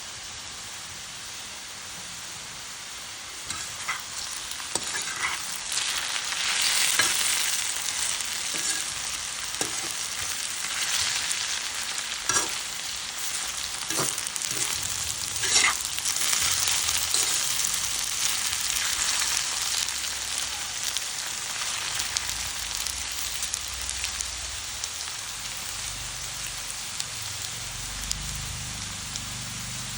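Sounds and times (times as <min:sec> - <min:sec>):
fries sizzling in hot oil: 0:00.0 - 0:29.9.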